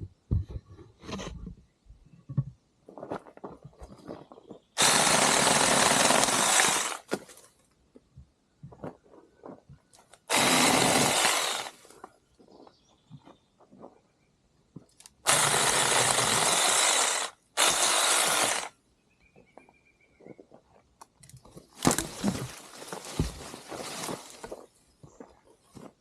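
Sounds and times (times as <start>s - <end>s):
mini chainsaw cutting wood: 4.8s - 7.2s, 10.2s - 11.9s, 15.3s - 18.7s
wood crackles and handling clicks: 21.0s - 24.6s.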